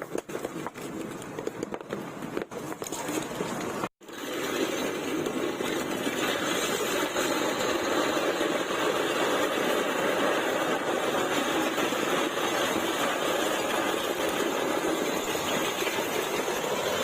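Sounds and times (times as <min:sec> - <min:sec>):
road roller engine running: 0:04.1 - 0:17.0.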